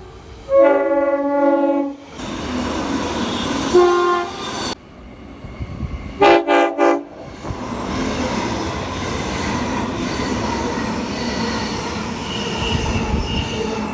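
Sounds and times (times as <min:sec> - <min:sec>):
train rumbling by: 0:00.0 - 0:13.9
train horn blasts: 0:00.5 - 0:02.0, 0:03.3 - 0:04.8, 0:06.2 - 0:07.2.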